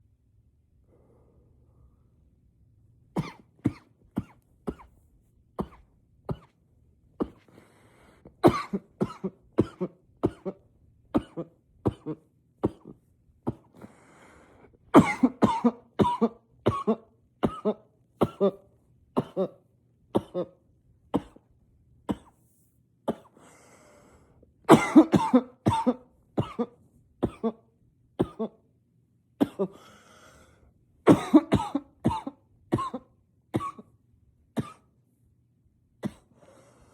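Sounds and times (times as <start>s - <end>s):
man coughing into a pillow: 3.2s - 5.0s, 5.6s - 6.6s, 7.2s - 7.5s, 8.4s - 13.8s, 14.9s - 20.6s, 21.2s - 21.5s, 22.1s - 22.4s, 23.1s - 23.4s, 24.7s - 28.6s, 29.4s - 29.8s, 31.1s - 33.9s, 34.6s - 34.9s, 36.0s - 36.3s.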